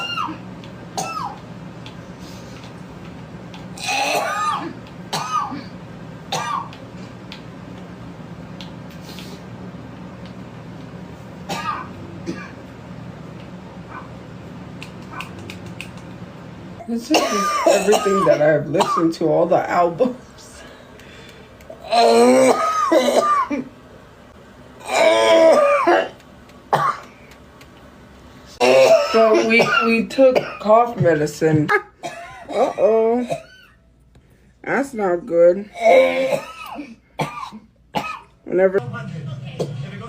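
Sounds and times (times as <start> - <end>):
woman coughing: 1.0 - 1.4, 3.8 - 6.7, 11.5 - 12.6, 17.0 - 19.2, 21.9 - 23.7, 24.9 - 27.0, 28.6 - 30.8, 31.7 - 33.8, 35.8 - 38.3
low hum: 38.8 - 40.0.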